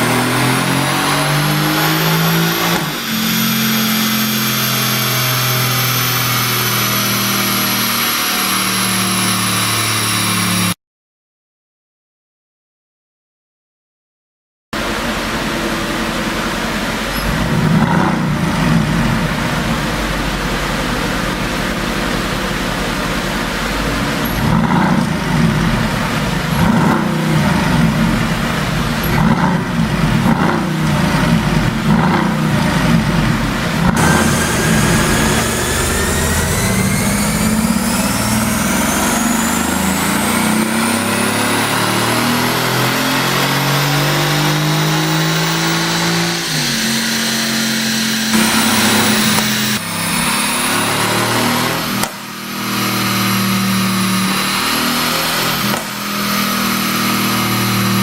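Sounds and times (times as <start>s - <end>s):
car engine revving on dyno: 0.0s - 10.8s, 14.8s - 58.0s
sharp exhaust pops: 51.8s - 52.3s, 55.5s - 56.7s.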